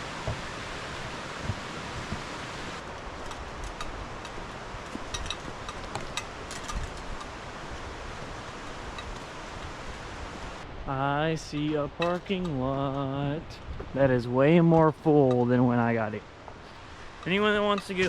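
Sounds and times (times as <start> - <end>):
low thuds: 0.0 - 2.8
footsteps on a trail: 0.0 - 7.8
leaves and twigs crackling: 0.0 - 10.6
rushing outdoor noise: 0.0 - 18.0.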